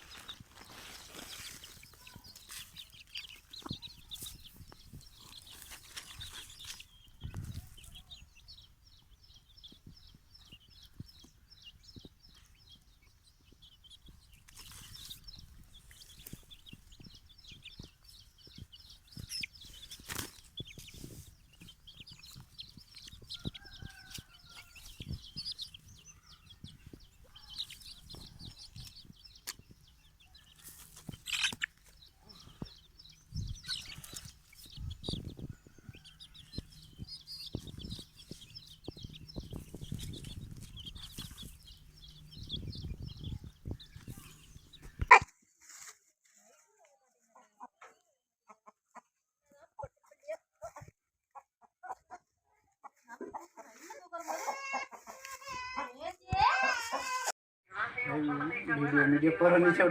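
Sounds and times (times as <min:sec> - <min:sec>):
high busy chirping: 0:00.0 - 0:45.2
chickens clucking: 0:00.0 - 0:45.9, 0:47.2 - 0:57.3.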